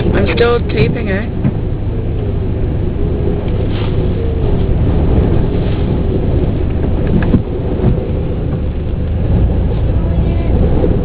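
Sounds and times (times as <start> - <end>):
car engine running: 0.0 - 11.0
wind buffeting microphone: 0.0 - 11.0.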